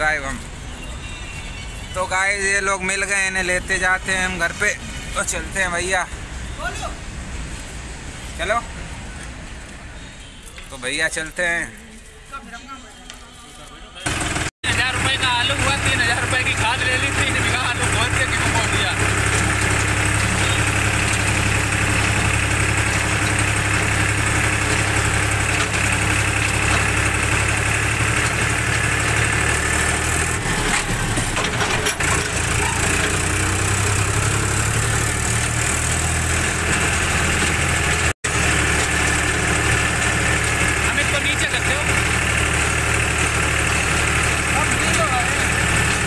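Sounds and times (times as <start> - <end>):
tractor engine droning: 14.0 - 46.0.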